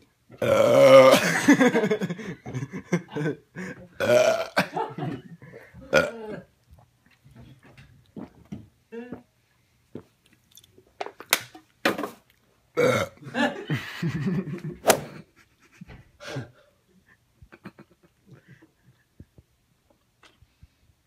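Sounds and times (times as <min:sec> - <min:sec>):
man belching loudly: 0:00.4 - 0:01.4, 0:04.0 - 0:04.6, 0:05.9 - 0:06.4, 0:12.8 - 0:13.2.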